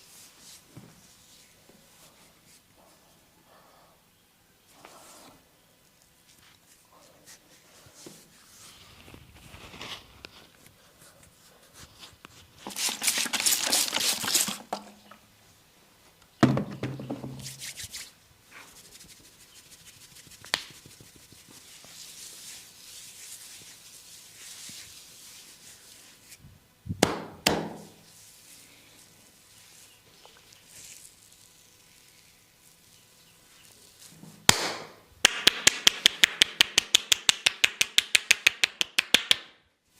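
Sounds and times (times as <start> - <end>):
soft rubbing on skin: 0.0 - 3.1, 6.1 - 13.8, 17.5 - 26.4, 28.0 - 34.2
hands slapping and tapping skin: 20.1 - 21.7, 34.5 - 39.6.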